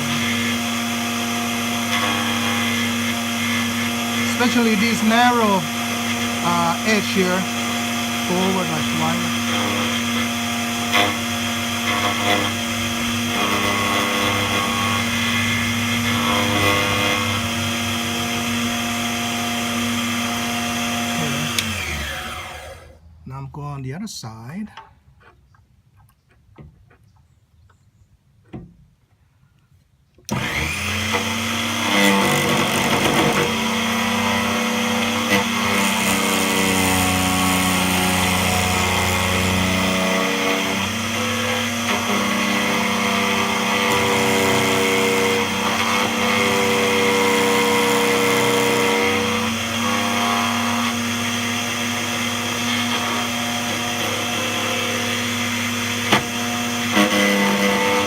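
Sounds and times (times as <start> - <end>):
key cutting machine motor humming: 0.0 - 22.8
cutter milling metal: 0.0 - 22.9, 30.3 - 58.0.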